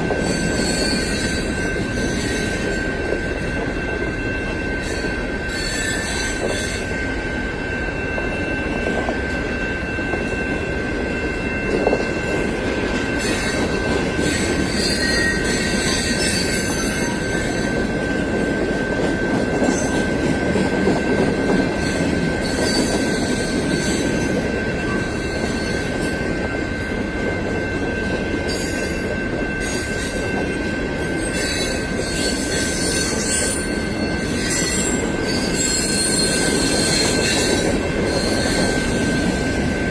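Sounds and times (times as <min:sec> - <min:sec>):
train wheels rumbling on rail: 0:00.0 - 0:39.9
high-pitched wheel squeal: 0:00.2 - 0:02.7, 0:04.8 - 0:07.0, 0:13.2 - 0:17.8, 0:31.2 - 0:39.4
sharp wheel squeals: 0:00.2 - 0:02.9, 0:04.3 - 0:07.1, 0:13.1 - 0:17.8, 0:21.8 - 0:25.9, 0:31.0 - 0:39.5.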